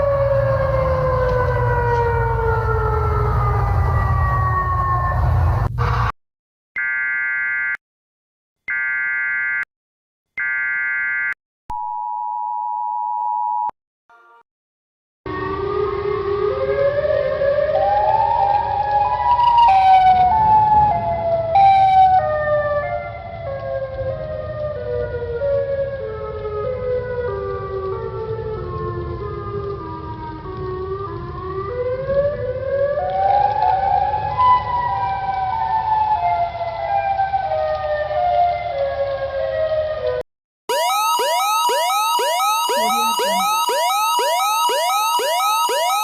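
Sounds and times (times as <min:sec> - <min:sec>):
electronic siren alert tone: 0:06.8 - 0:07.8, 0:08.7 - 0:09.7, 0:10.4 - 0:12.0, 0:19.4 - 0:20.4, 0:21.6 - 0:22.2, 0:40.7 - 0:46.0.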